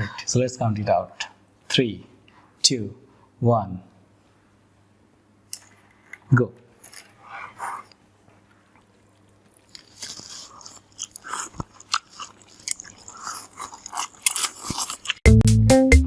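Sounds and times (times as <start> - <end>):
people chewing noodles: 8.7 - 15.2.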